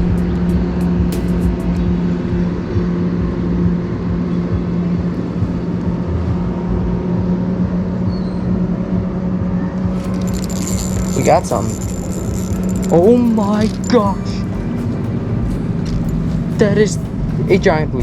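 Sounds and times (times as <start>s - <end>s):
motor humming: 9.8s - 17.4s.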